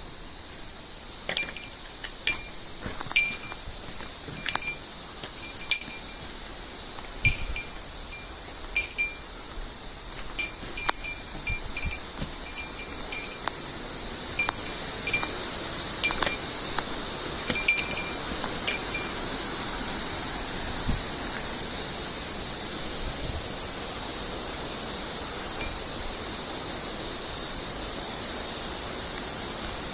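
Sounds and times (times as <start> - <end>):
steady high-pitched hiss: 0.0 - 29.9
small bell tinkling: 1.3 - 3.7, 4.3 - 6.3, 7.2 - 9.3, 10.3 - 13.5, 14.4 - 15.4, 16.0 - 16.5, 17.5 - 19.3.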